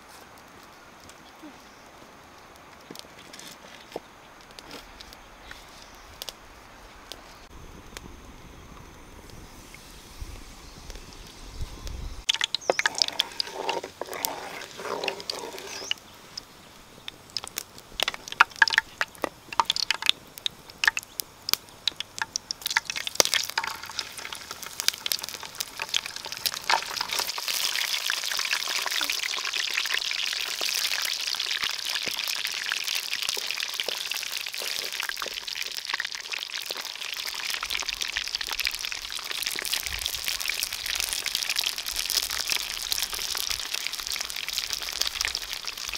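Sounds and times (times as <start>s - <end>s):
hot oil sizzling in a pan: 9.5s - 45.9s.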